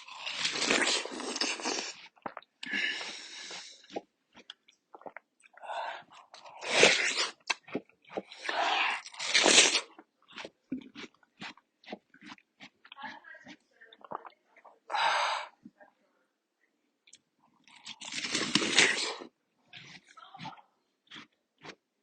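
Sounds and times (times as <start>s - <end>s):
crunching watermelon bites: 0.0s - 14.3s, 17.6s - 21.9s
chewing and mouth clicks: 0.0s - 14.8s, 17.0s - 21.9s.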